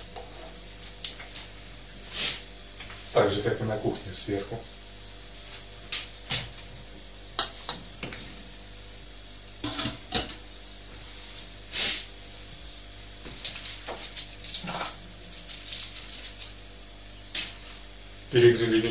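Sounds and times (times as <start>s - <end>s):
faint steady hum: 0.0s - 18.9s
short hiss: 11.7s - 12.1s.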